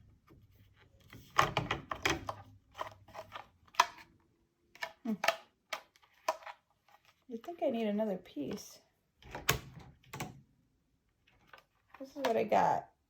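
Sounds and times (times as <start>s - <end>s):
plastic parts clicking: 1.1s - 4.1s, 4.7s - 7.1s.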